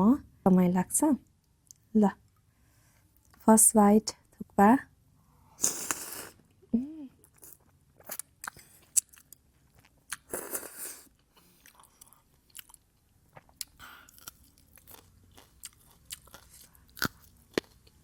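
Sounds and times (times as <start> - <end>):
wet chewing with mouth clicks: 7.3 - 18.0.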